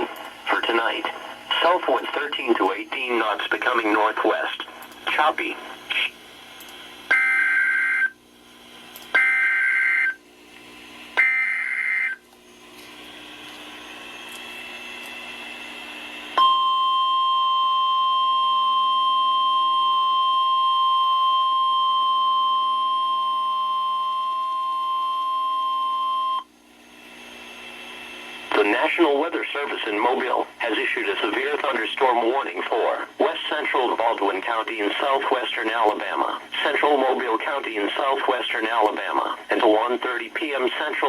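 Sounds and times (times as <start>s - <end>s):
faint static: 0.0s - 9.0s
steady warning alarm tone: 7.1s - 8.2s, 9.1s - 10.2s, 11.1s - 12.2s, 16.3s - 26.5s.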